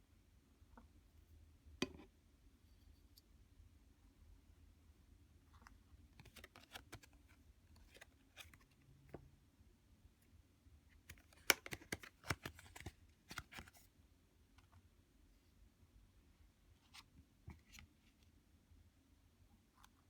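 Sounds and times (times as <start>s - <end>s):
cards being flipped and tapped: 6.2s - 7.2s, 11.1s - 13.8s.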